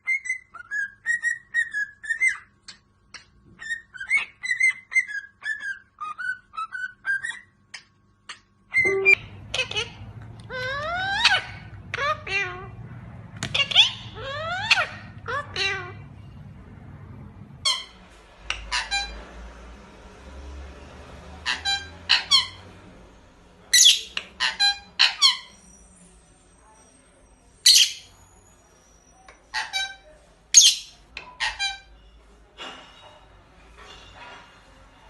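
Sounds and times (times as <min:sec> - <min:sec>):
parrot squawking and chirping: 0:00.0 - 0:16.1, 0:17.6 - 0:19.3, 0:21.4 - 0:22.8, 0:23.7 - 0:25.6, 0:27.6 - 0:28.2, 0:29.4 - 0:32.0.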